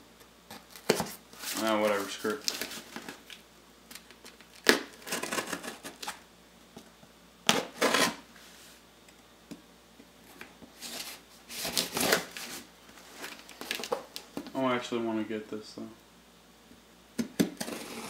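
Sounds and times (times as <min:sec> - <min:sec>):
knife cutting cardboard box: 0:04.7 - 0:06.2, 0:07.5 - 0:08.2, 0:17.4 - 0:18.0.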